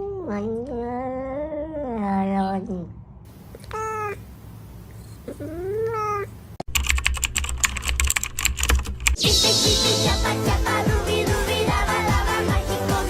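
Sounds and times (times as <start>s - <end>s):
cat meowing: 3.6s - 4.2s, 5.2s - 6.3s
computer keyboard typing: 6.6s - 9.2s.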